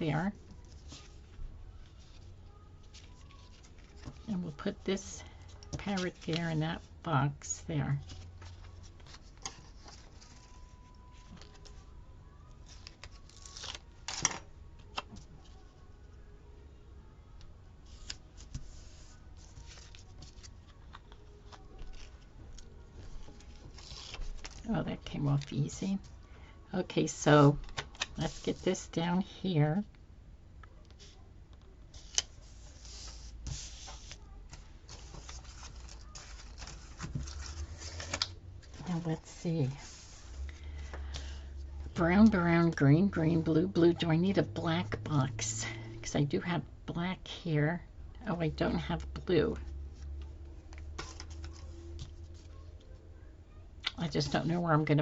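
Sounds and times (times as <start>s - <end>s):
paper rustling: 0.6s - 4.8s, 5.5s - 6.6s, 8.0s - 11.8s, 17.9s - 24.7s, 31.9s - 41.4s, 50.7s - 52.8s.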